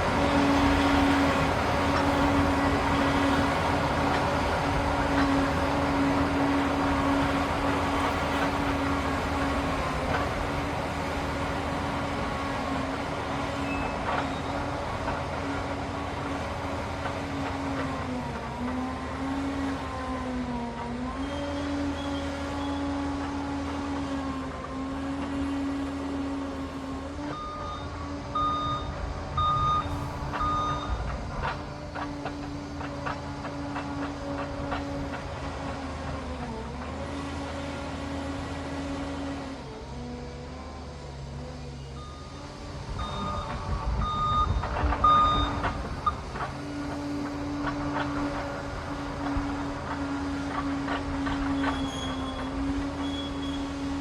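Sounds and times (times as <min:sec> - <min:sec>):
dozer diesel engine running: 0:00.0 - 0:54.0
reversing alarm beeping: 0:27.3 - 0:31.1, 0:41.9 - 0:46.4.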